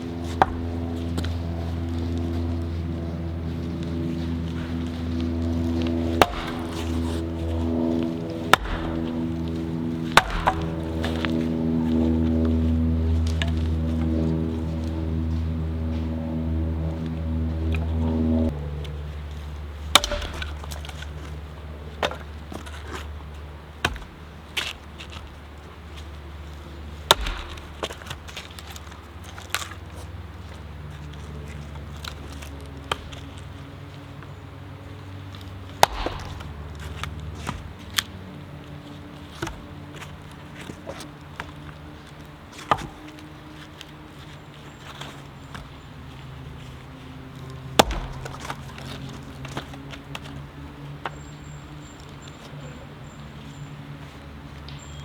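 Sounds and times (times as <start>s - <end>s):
steady low hum: 0.0s - 55.0s
axe chopping wood: 0.2s - 1.4s, 4.5s - 18.6s, 19.6s - 23.1s, 23.8s - 25.2s, 27.0s - 28.8s, 35.7s - 38.1s, 42.6s - 43.0s, 47.7s - 50.2s.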